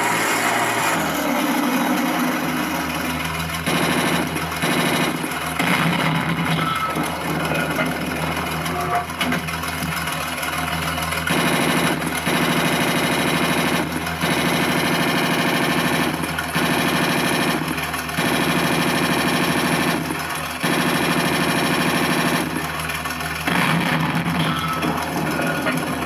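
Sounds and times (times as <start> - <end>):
electronic engine sound: 0.0 - 10.0, 23.4 - 26.0.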